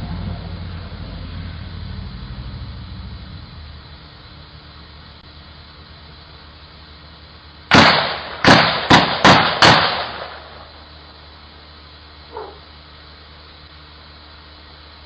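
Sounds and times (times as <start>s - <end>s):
gunshots with echo: 7.7s - 10.4s.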